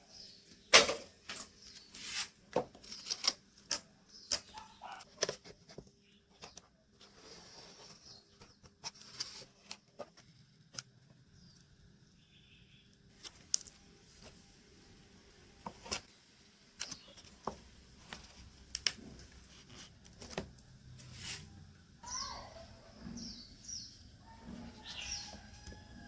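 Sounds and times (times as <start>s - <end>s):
birds chirping: 3.9s - 5.1s, 11.0s - 13.1s, 14.8s - 17.9s, 21.7s - 26.0s.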